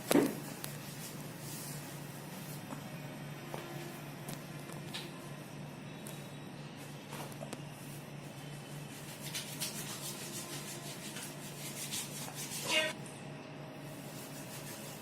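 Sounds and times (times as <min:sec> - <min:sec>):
hands rubbing skin or cloth: 0:09.0 - 0:12.9.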